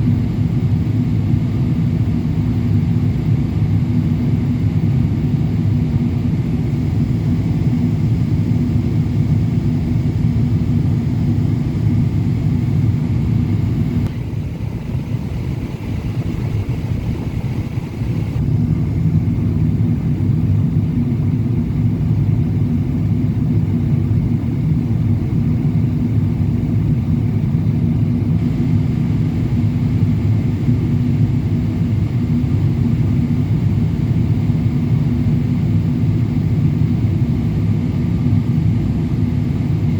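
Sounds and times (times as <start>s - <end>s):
airliner engines rumbling: 0.0s - 39.9s
rushing air: 11.0s - 19.0s.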